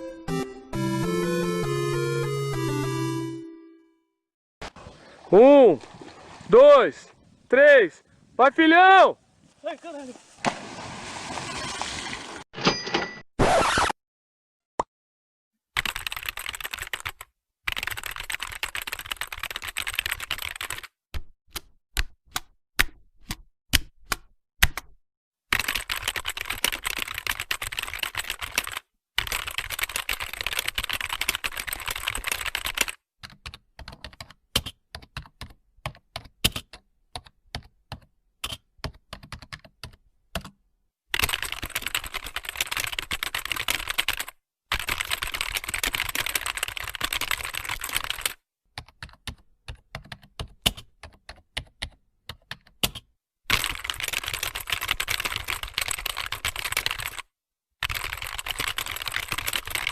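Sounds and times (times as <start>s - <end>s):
typing on a computer keyboard: 15.8s - 21.0s, 25.5s - 40.6s, 41.2s - 59.9s.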